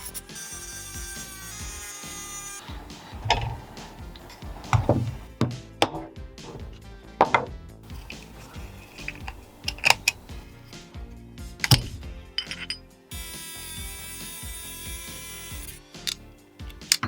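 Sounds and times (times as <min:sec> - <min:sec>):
background music: 0:00.0 - 0:17.0
metal padlock clinks and knocks: 0:07.9 - 0:10.5, 0:11.6 - 0:12.8, 0:16.1 - 0:17.0.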